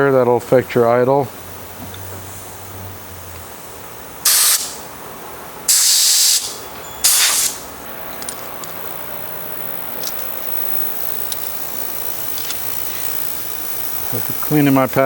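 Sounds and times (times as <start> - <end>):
compressed air blasts: 4.2 - 5.0, 5.7 - 7.9.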